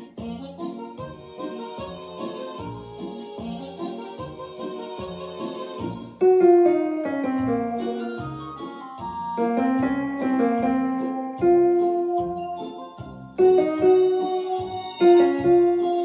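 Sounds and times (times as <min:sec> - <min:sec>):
slow piano melody: 0:05.8 - 0:16.0.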